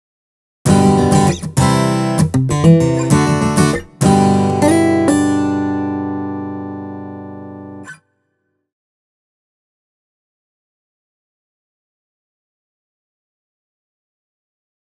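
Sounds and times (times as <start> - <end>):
sampled acoustic guitar chords: 0.7 - 8.1.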